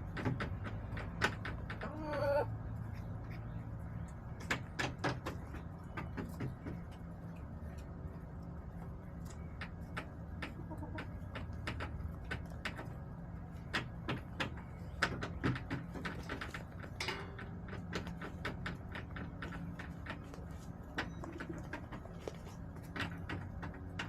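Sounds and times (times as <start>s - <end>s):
hens pecking on plastic: 0.0s - 24.0s
steady low hum: 0.0s - 24.0s
hen clucking: 0.7s - 4.2s, 9.4s - 12.8s, 18.6s - 22.6s.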